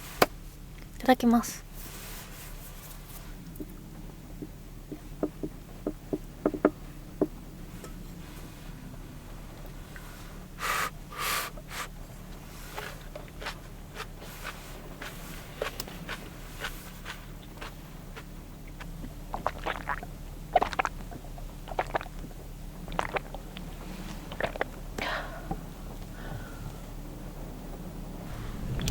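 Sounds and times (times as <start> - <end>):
low steady hum: 0.0 - 28.9
breathy sniffs or slurps: 9.9 - 13.1.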